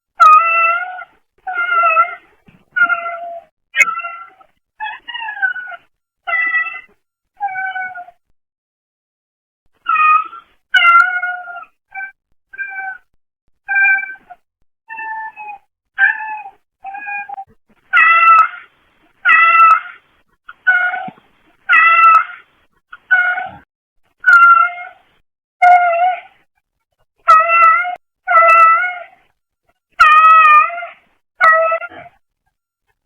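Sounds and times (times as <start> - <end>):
cat meowing: 2.8 - 8.2, 9.9 - 23.6, 24.2 - 25.0, 27.3 - 29.2, 30.0 - 32.1.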